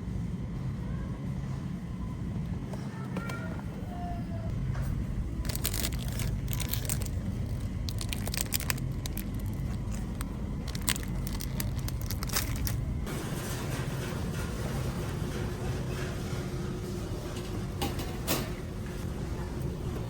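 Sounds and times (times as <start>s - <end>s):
steady low hum: 3.6s - 20.0s
crinkling and clicking handling noises: 4.7s - 13.0s.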